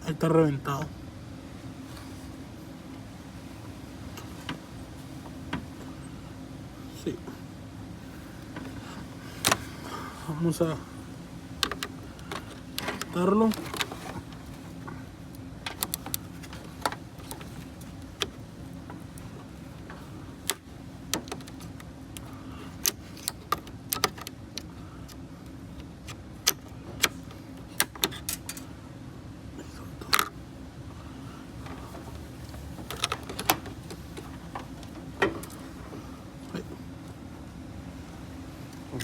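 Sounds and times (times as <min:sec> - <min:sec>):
steady low hum: 0:00.0 - 0:39.0
hands and tools clicking: 0:15.6 - 0:19.2, 0:19.8 - 0:25.2.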